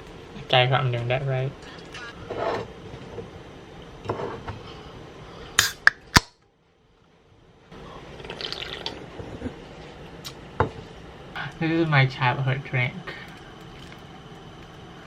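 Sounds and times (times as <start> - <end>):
liquid and clinking of drink: 8.2 - 9.5, 13.2 - 14.1.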